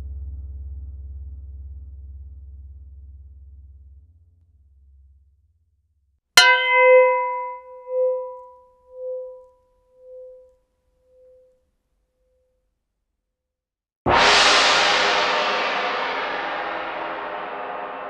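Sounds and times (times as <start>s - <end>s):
small gong ringing: 6.4s - 9.4s.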